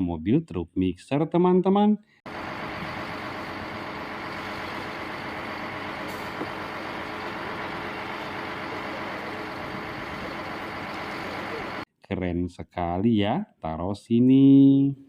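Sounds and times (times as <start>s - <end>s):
heavy truck engine running: 2.3s - 11.8s.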